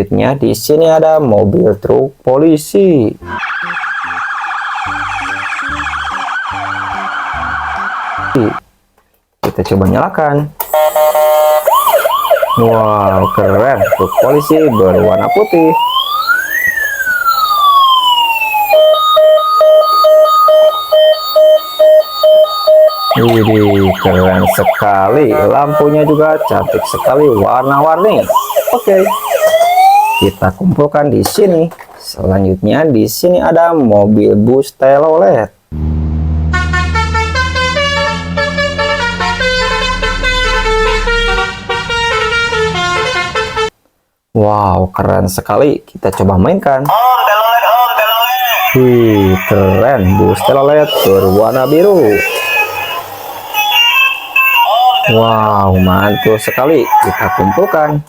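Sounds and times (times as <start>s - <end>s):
electronic multi-tone horn tune: 3.2s - 8.6s, 10.7s - 11.8s, 18.5s - 30.4s, 35.7s - 43.8s, 48.6s - 57.7s
toy siren wail: 3.2s - 8.6s, 10.7s - 30.4s, 46.9s - 58.0s
fast repeating beeps: 18.7s - 26.7s
low engine hum: 35.8s - 41.9s.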